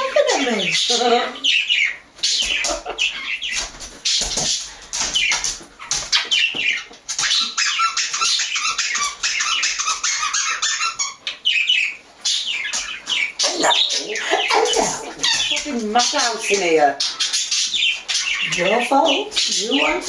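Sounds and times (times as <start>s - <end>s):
parrots chattering and squawking: 0.0s - 20.0s.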